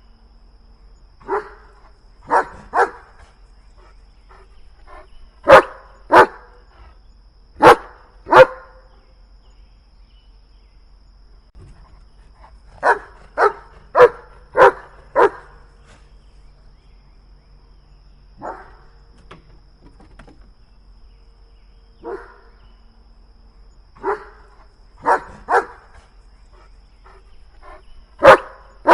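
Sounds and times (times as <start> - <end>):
dog barking: 1.2 - 3.1, 4.9 - 6.6, 7.6 - 8.8, 12.8 - 15.6, 18.4 - 18.8, 22.0 - 22.5, 24.0 - 25.9, 27.6 - 28.9.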